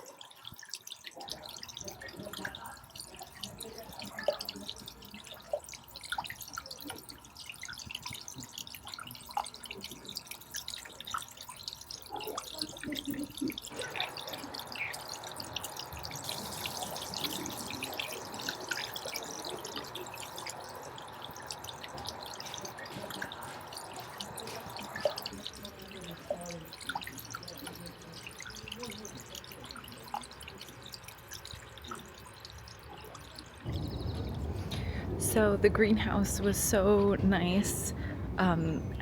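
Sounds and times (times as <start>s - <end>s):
water dripping and trickling: 0.0s - 39.0s
faint steady hum: 33.6s - 39.0s.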